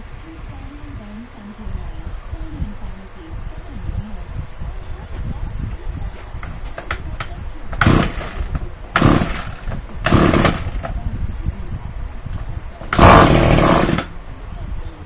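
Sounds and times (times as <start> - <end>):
small petrol engine revving: 7.8 - 10.9, 12.9 - 14.1.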